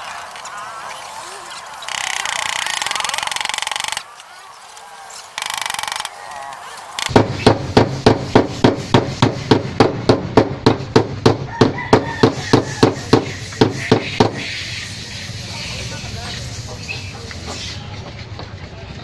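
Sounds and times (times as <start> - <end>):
steady hammering: 7.0 - 14.4.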